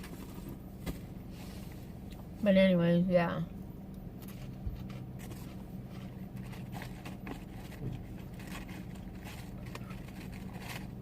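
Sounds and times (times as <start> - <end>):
low hum inside a car: 0.0 - 11.0
faint crunches and rustles: 4.2 - 11.0.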